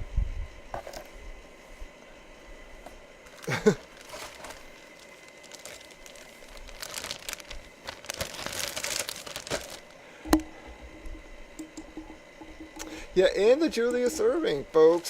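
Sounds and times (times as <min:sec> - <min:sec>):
plastic wrapping crinkling: 0:03.3 - 0:12.9.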